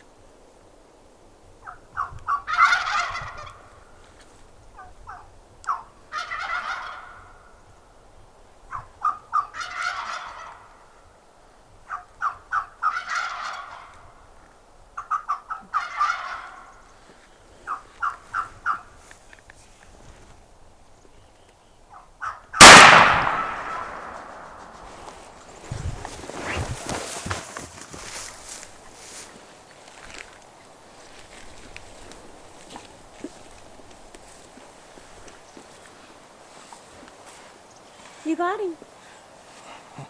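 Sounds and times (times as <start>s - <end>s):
turkey gobbling: 1.6s - 3.6s, 5.1s - 7.4s, 8.7s - 10.7s, 11.9s - 14.0s, 15.0s - 16.8s.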